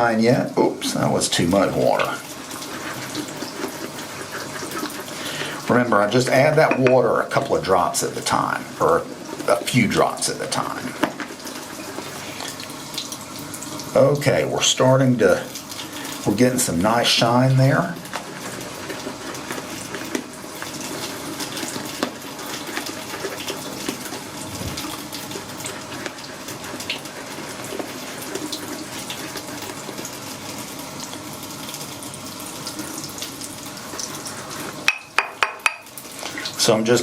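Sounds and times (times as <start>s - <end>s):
shaving brush swishing lather: 1.0s - 6.3s, 11.6s - 12.7s
brush knocking against bowl: 6.6s - 7.0s, 34.9s - 35.9s.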